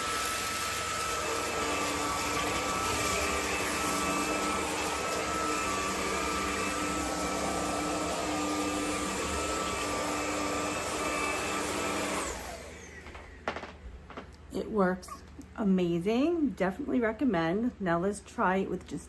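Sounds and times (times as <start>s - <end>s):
vacuum cleaner whining hum: 0.0s - 14.2s.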